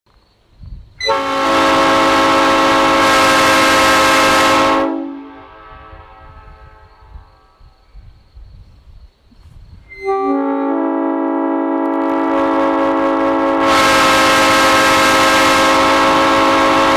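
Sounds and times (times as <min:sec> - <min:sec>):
chord horn blast: 0:01.0 - 0:07.6, 0:09.9 - 0:16.9
low rumble: 0:05.2 - 0:08.6.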